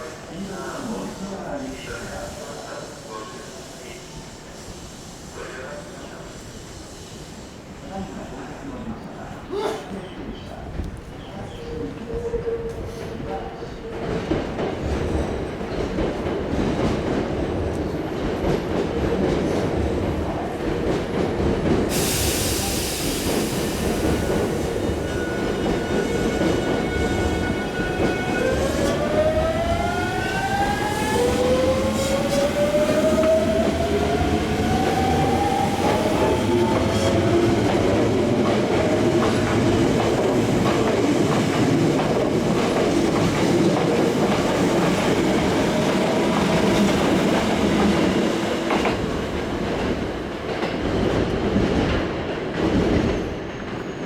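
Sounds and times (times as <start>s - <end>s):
air hiss: 21.9s - 27.7s.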